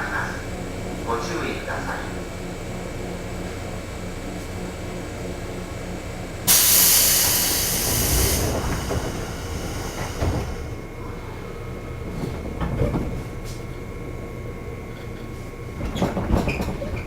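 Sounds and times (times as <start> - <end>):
train hum: 0.0 - 17.0
air brakes hissing: 6.5 - 10.8.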